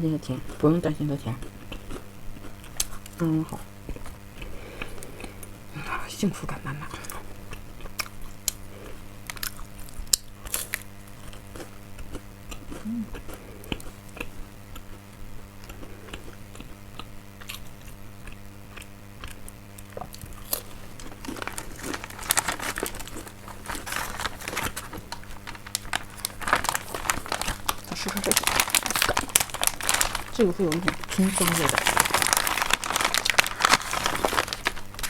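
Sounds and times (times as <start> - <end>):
steady low hum: 0.0 - 35.0
chewing crisp crackers: 0.3 - 5.8, 6.6 - 35.0
mouth sounds: 12.7 - 13.8.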